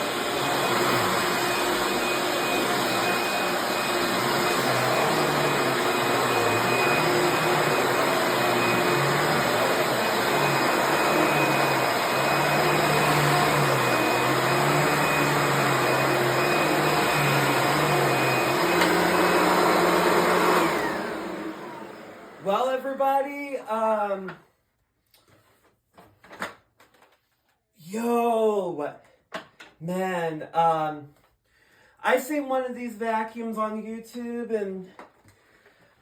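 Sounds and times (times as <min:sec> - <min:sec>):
vacuum cleaner running: 0:00.0 - 0:23.0.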